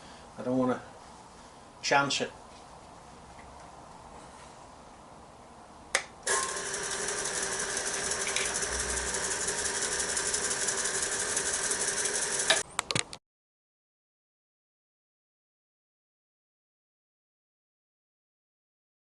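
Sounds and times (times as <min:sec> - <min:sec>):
lathe motor hum: 0:06.3 - 0:12.6
lathe tool chattering scrape: 0:06.3 - 0:12.6.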